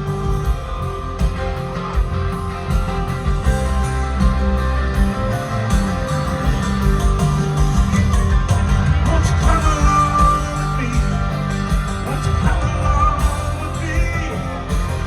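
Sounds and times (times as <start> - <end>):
country-rock band playing: 0.0 - 15.0.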